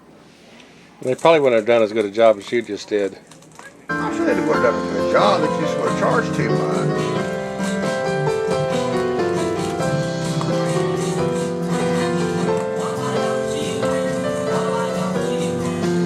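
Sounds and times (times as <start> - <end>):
music with held melody notes: 3.9 - 16.0.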